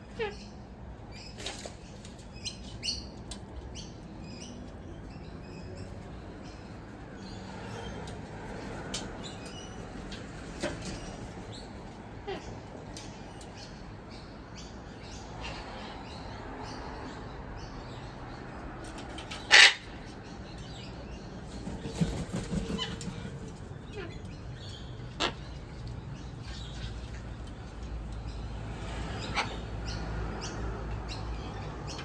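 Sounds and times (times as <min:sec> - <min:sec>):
cockatoos and lorikeets calling: 0:19.4 - 0:20.9, 0:21.6 - 0:28.4, 0:29.0 - 0:32.0.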